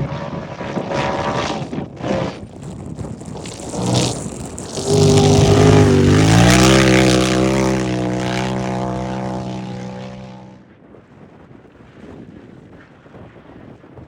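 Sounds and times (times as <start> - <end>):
off-road vehicle engine passing: 3.4 - 10.6.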